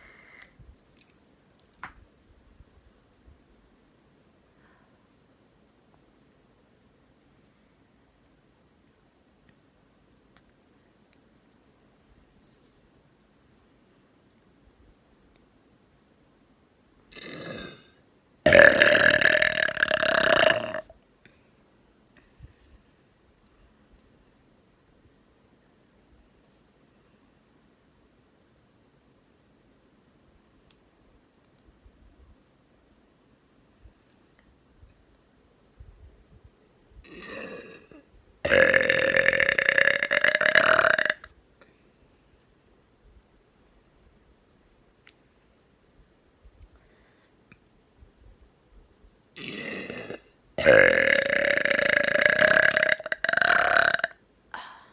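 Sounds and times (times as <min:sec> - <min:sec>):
breathy sound: 0:00.0 - 0:00.5, 0:54.5 - 0:54.9
loud burp: 0:17.1 - 0:20.9, 0:37.0 - 0:41.3, 0:49.4 - 0:54.2.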